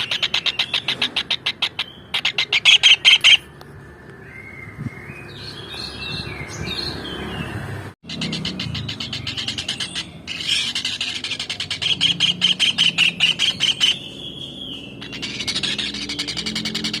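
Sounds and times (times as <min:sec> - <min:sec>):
kingfisher calling: 0:00.0 - 0:03.4, 0:08.0 - 0:17.0.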